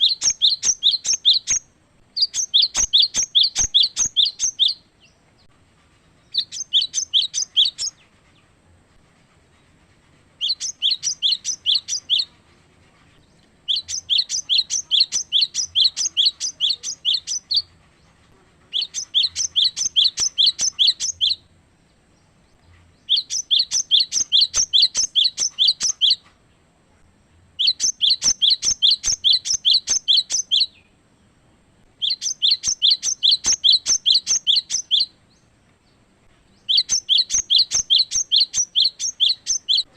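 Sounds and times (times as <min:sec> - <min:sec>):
bird singing rapid high notes: 0:00.0 - 0:01.6, 0:02.2 - 0:04.8, 0:06.3 - 0:07.9, 0:10.4 - 0:12.3, 0:13.7 - 0:17.7, 0:18.7 - 0:21.4, 0:23.1 - 0:26.2, 0:27.6 - 0:30.8, 0:32.0 - 0:35.1, 0:36.6 - 0:39.9.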